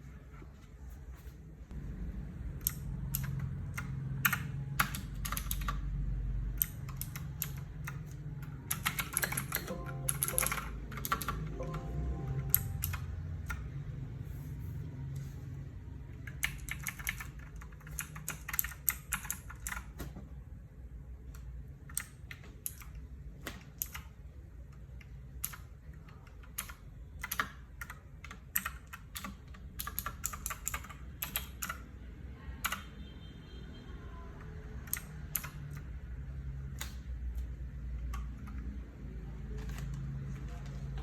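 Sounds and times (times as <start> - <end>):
low steady hum: 0.0 - 16.3.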